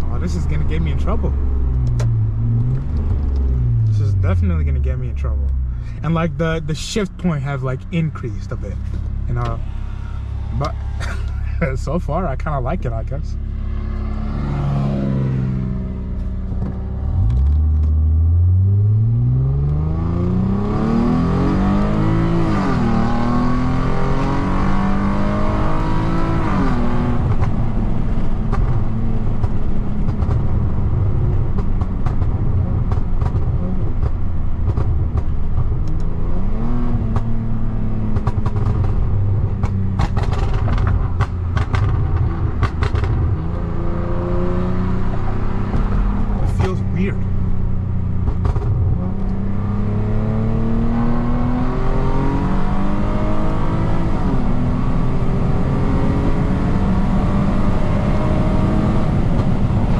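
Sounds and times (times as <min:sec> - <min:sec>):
exhaust crackles and pops: 0:00.0 - 0:14.3, 0:15.7 - 0:18.4, 0:26.7 - 0:43.9, 0:45.0 - 0:49.6, 0:59.0 - 0:59.9
car engine accelerating hard: 0:00.0 - 0:59.9.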